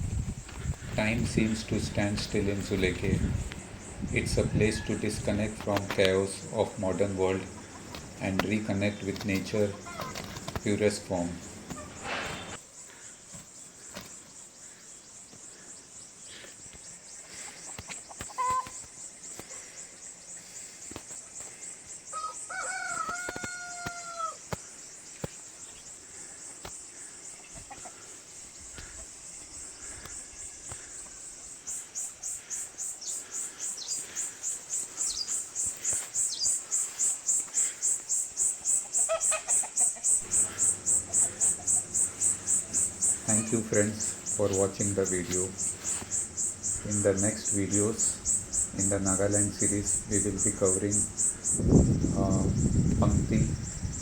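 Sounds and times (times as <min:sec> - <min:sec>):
high insect drone: 0:00.0 - 0:54.0
pulsing high insect call: 0:00.0 - 0:54.0
rooster crowing: 0:04.1 - 0:05.8, 0:11.4 - 0:12.6, 0:22.1 - 0:24.4, 0:40.2 - 0:49.0.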